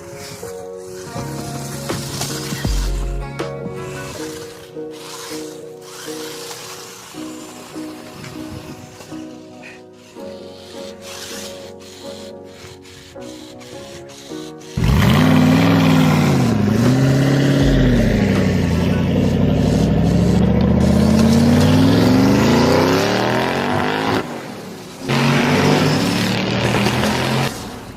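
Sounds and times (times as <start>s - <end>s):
engine revving: 4.0s - 8.0s, 14.2s - 27.9s.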